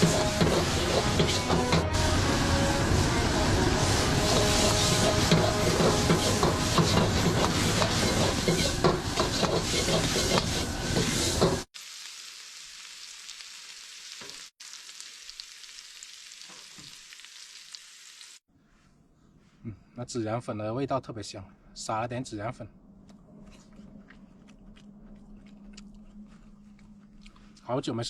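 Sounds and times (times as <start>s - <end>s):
spatula scraping a pan: 0.0s - 1.9s, 4.0s - 11.7s
vegetables sizzling in a wok: 0.0s - 18.4s.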